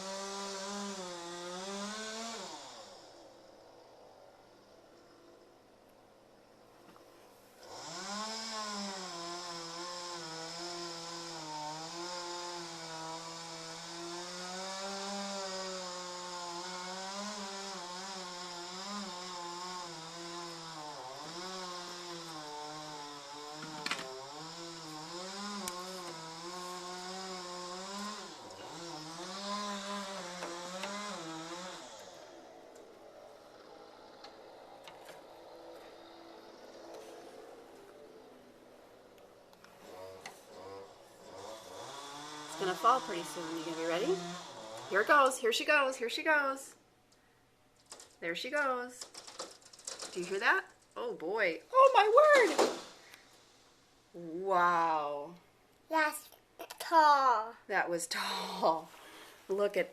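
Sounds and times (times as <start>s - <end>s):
chainsaw cutting wood: 0.0s - 3.4s, 7.6s - 38.1s, 39.7s - 45.5s, 47.8s - 50.8s, 51.8s - 54.0s.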